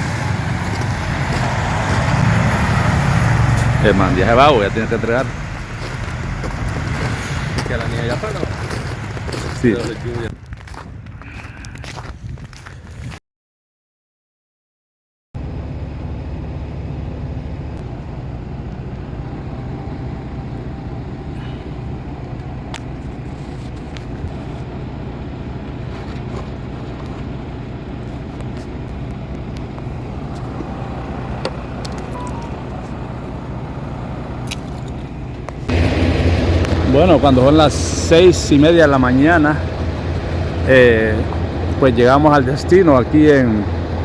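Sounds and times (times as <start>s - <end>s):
truck engine and road rumble: 0.0s - 13.2s, 15.4s - 44.0s.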